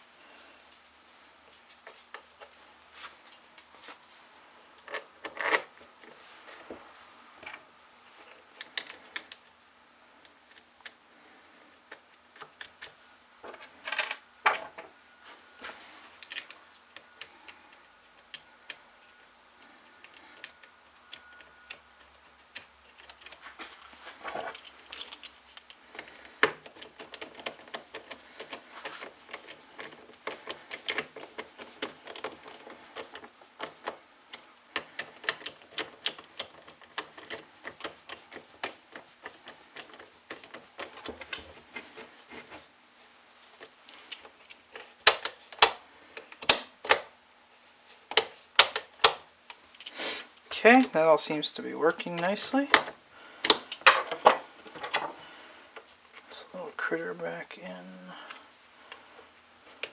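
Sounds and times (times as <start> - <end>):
tools clicking on workbench: 45.0 - 45.8, 46.4 - 47.1, 48.1 - 49.2, 52.7 - 54.4.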